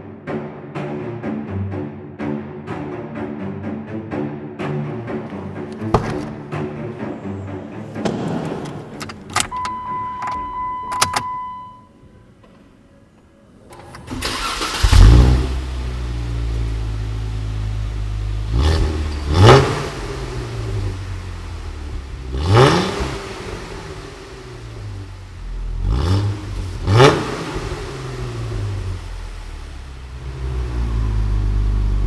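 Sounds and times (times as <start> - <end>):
background music: 0.0 - 14.4
car engine starting and idling: 5.2 - 32.0
clicks: 7.9 - 11.4
engine revving: 13.8 - 25.0, 25.6 - 32.0.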